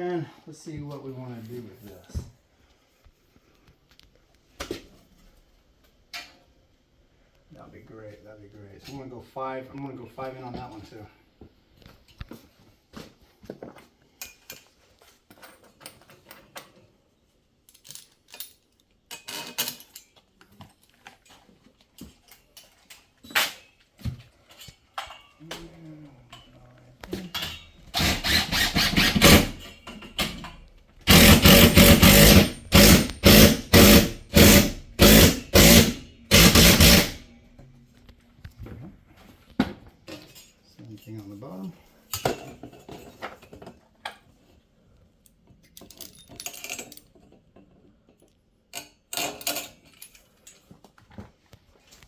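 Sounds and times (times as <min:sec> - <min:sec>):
impact driver hammering screws: 0:28.0 - 0:37.2.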